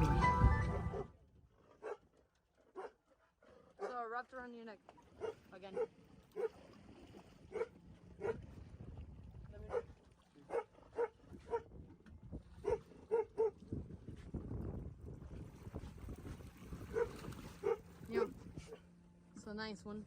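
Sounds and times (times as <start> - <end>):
dog barking: 1.8 - 2.1, 2.7 - 3.0, 3.8 - 4.0, 5.2 - 6.6, 7.5 - 8.4, 9.7 - 9.9, 10.5 - 11.7, 12.6 - 13.6, 16.9 - 18.8.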